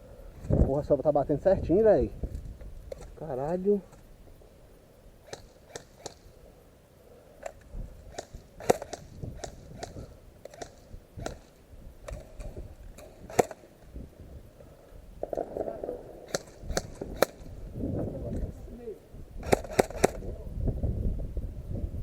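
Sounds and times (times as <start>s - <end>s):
airsoft gun shots: 5.2s - 6.3s, 7.4s - 13.7s, 15.2s - 17.5s, 19.4s - 20.2s.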